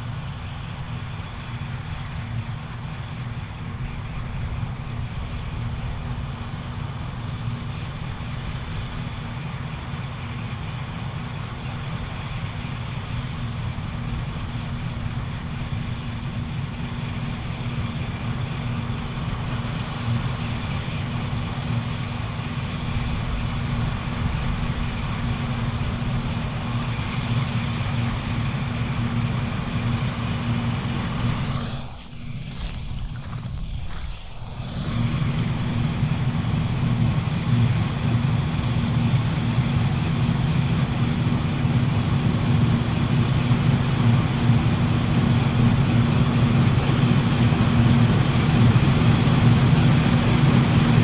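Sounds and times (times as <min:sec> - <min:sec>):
combine harvester engine drone: 0:00.0 - 0:51.0.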